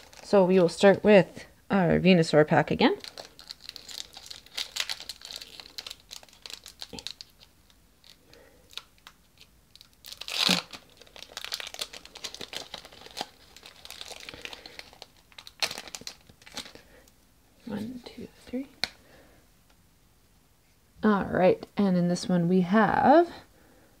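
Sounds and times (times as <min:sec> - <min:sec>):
foil wrapper tearing and crinkling: 0:00.0 - 0:00.8, 0:02.9 - 0:16.9.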